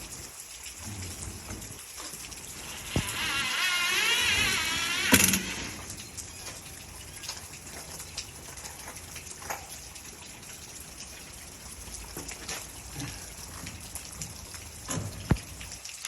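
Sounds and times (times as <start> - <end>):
drips and ticks: 0.0 - 16.0
steady rain hiss: 0.0 - 16.0.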